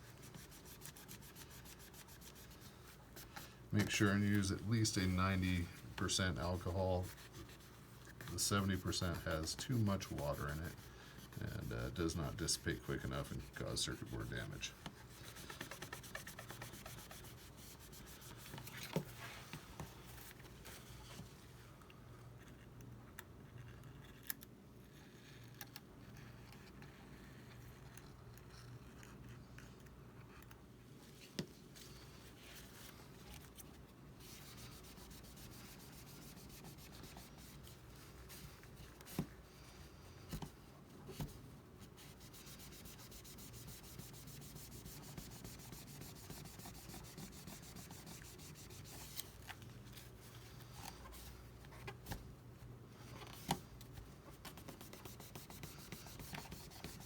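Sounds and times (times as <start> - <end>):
rubbing and scraping: 0.1 - 19.6, 40.3 - 52.2, 54.3 - 57.0.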